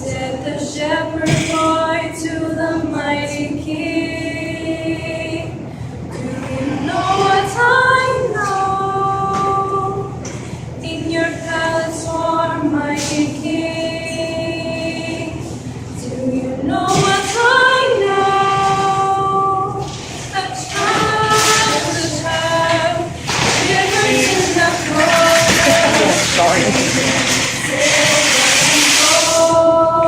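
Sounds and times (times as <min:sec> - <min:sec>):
girls singing a carol unaccompanied: 0:00.0 - 0:10.2, 0:10.8 - 0:30.0.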